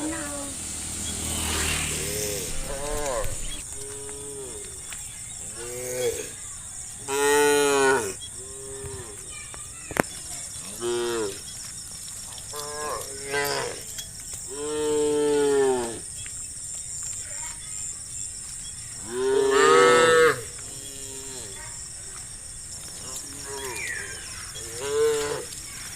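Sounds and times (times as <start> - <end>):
cows mooing: 1.1 - 4.8, 7.1 - 9.2, 12.5 - 13.9, 14.5 - 16.0, 19.0 - 21.6, 23.0 - 25.6.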